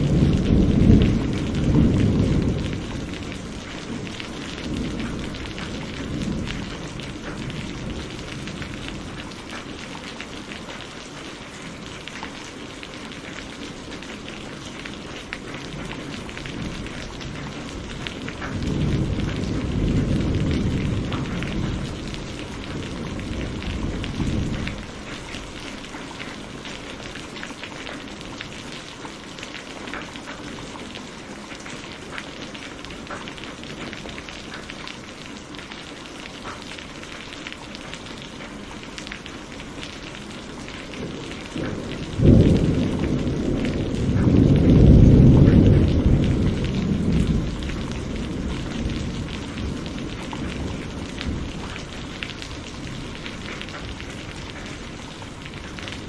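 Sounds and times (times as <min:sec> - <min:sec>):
thunderclap: 0:00.0 - 0:09.7, 0:15.3 - 0:25.3, 0:40.6 - 0:56.0
thunder rumble: 0:00.0 - 0:10.0, 0:13.8 - 0:27.2, 0:40.1 - 0:56.0
steady rain: 0:00.0 - 0:56.0.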